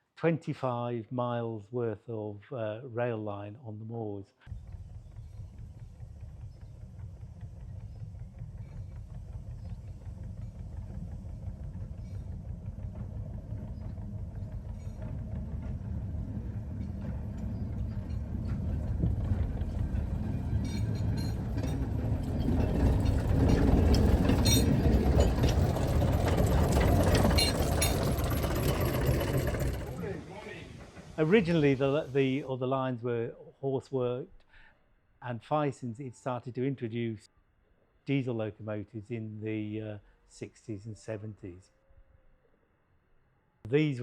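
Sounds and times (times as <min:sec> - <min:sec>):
train wheels clicking over rails: 0:04.5 - 0:32.2
train engine rumble: 0:04.5 - 0:32.6.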